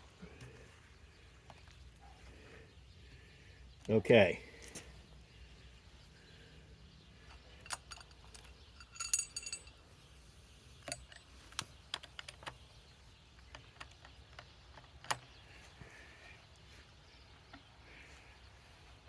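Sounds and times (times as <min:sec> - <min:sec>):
handling clicks and knocks: 0:07.2 - 0:09.8, 0:10.8 - 0:15.4
metallic jingle: 0:07.3 - 0:09.8.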